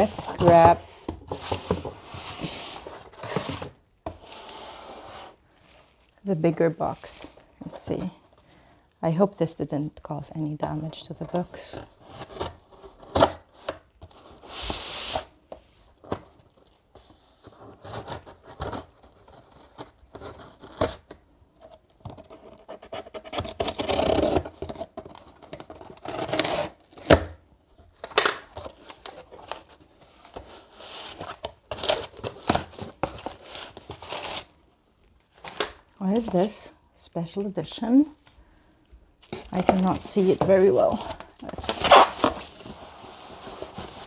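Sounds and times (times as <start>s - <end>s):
cardboard box tearing and scraping: 0.0s - 5.4s, 17.5s - 21.1s, 22.3s - 34.5s, 39.2s - 44.0s.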